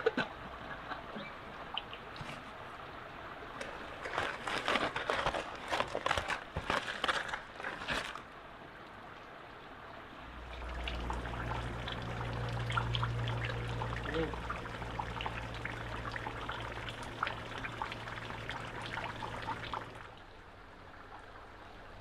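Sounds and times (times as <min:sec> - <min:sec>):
low steady hum: 0:08.0 - 0:22.0
liquid pouring and splashing: 0:10.3 - 0:20.2.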